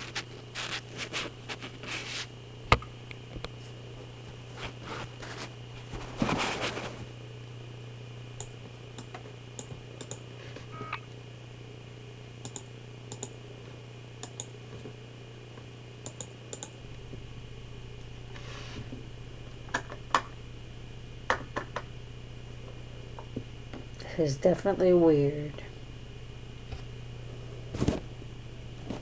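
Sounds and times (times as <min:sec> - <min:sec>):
low electrical hum: 0:00.0 - 0:29.0
light clicks: 0:12.4 - 0:13.3.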